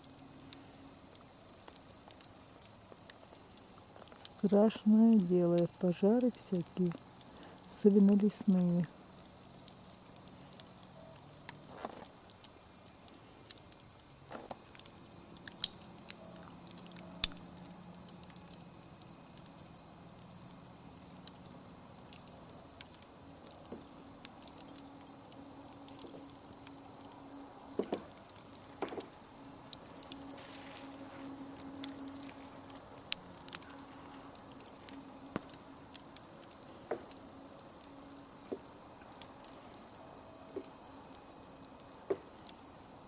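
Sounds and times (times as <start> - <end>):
campfire crackling and popping: 0.0 - 43.0
insects chirring: 0.0 - 43.0.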